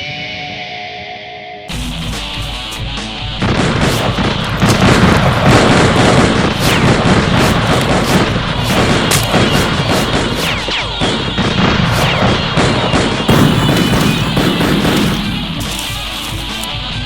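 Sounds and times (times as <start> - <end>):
film music: 0.0 - 17.0
rapid gunfire: 3.3 - 16.8.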